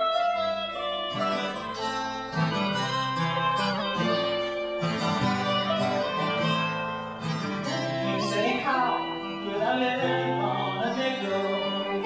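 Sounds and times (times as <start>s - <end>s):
acoustic guitar strumming chords: 0.0s - 12.0s
person singing: 7.6s - 12.0s.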